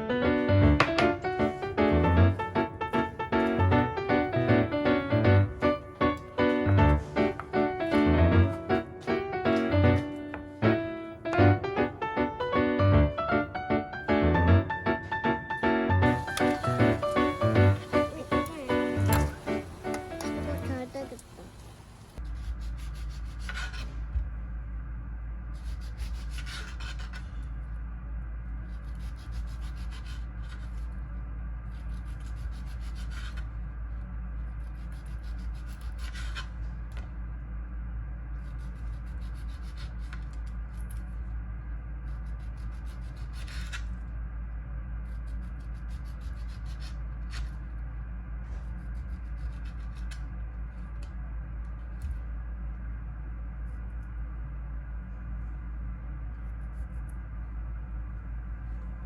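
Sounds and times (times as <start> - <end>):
steady low hum: 0.0 - 59.0
rasping rubbing strokes: 14.6 - 21.1.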